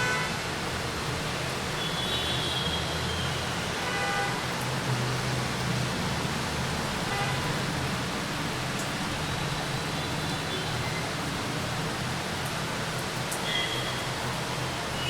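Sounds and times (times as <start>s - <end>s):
road traffic rumble: 0.0s - 15.0s
steady rain hiss: 0.0s - 15.0s.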